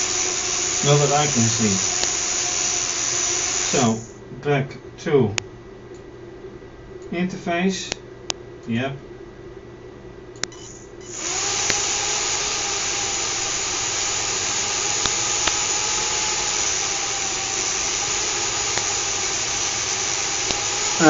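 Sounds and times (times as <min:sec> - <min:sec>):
electric motor whirring: 0:00.0 - 0:04.2, 0:10.5 - 0:21.0
motor switch click: 0:00.2 - 0:02.2, 0:10.4 - 0:10.8, 0:11.4 - 0:21.0.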